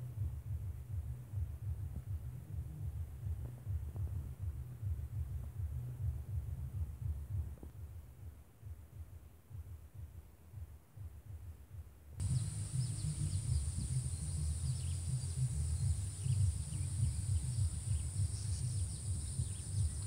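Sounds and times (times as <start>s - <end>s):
wind rumble on microphone: 0.0s - 8.0s, 12.2s - 20.0s
bird chirps: 12.2s - 20.0s.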